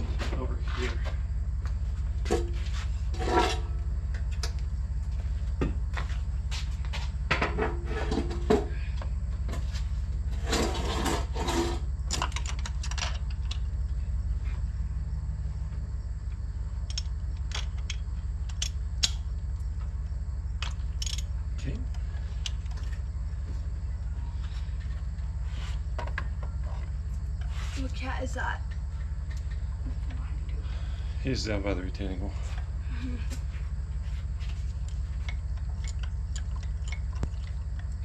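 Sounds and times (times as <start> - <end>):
steady low hum: 0.0 - 38.0
hand tools rubbing and scraping: 2.6 - 3.8, 10.3 - 11.9.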